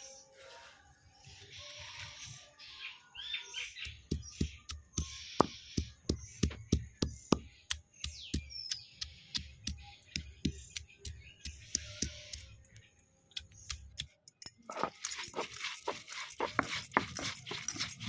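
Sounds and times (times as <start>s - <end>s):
birds chirping: 0.0s - 18.0s
sharp knocks with dull thuds: 3.8s - 12.4s.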